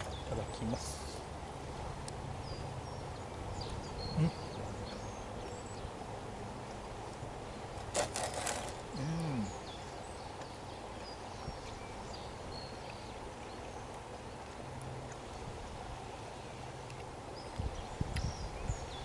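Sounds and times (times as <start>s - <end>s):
steady background hiss: 0.0s - 19.0s
man humming: 4.2s - 4.4s, 8.9s - 9.6s.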